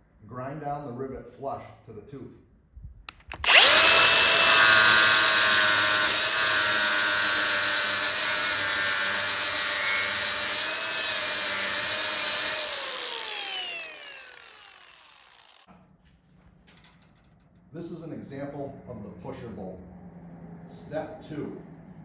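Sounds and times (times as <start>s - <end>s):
power grinder grinding metal: 3.3s - 15.7s.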